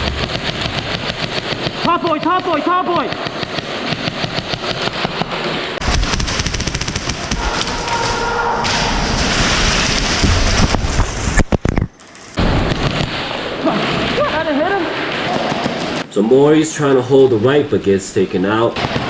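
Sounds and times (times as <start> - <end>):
airsoft guns firing rapidly: 0.0 - 7.4, 18.8 - 19.0.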